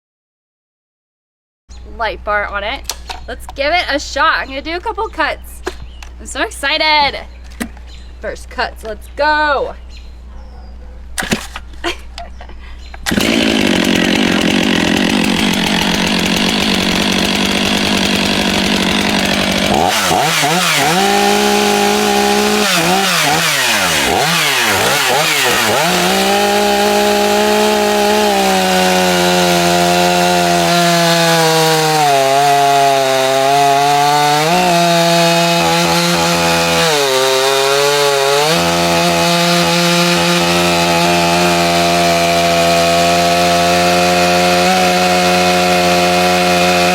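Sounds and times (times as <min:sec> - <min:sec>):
chainsaw cutting concrete: 0:13.0 - 0:46.9.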